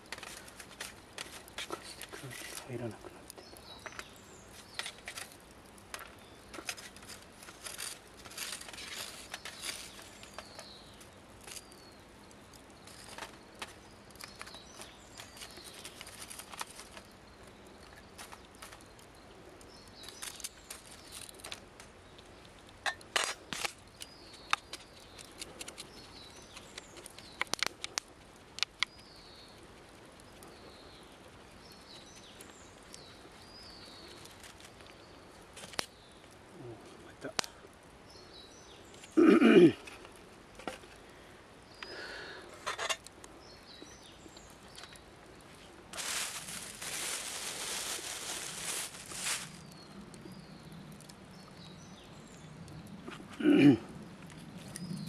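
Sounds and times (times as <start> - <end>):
clicks and knocks from camp stove: 42.6 - 43.2.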